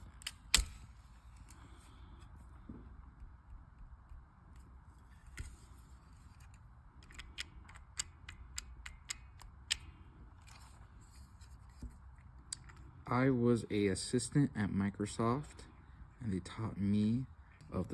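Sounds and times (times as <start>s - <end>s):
stapler clicks: 0.1s - 0.8s.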